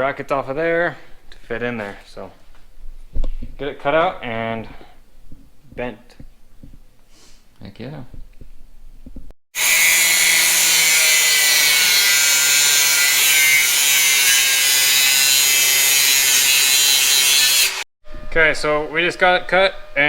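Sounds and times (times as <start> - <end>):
power tool cutting metal: 9.6 - 17.9.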